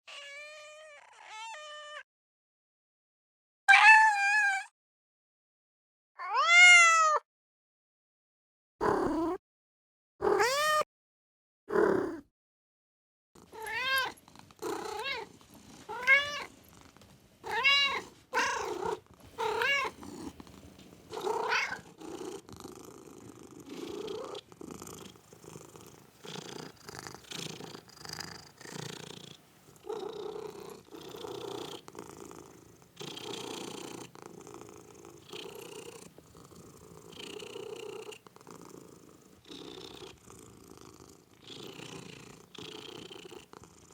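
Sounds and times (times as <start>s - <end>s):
cat meowing: 0.1s - 2.1s, 3.7s - 4.7s, 6.2s - 7.2s, 10.2s - 10.8s, 13.5s - 14.2s, 14.8s - 15.3s, 15.9s - 16.5s, 17.4s - 20.0s, 21.2s - 21.8s
cat purring: 8.8s - 9.4s, 13.4s - 43.9s.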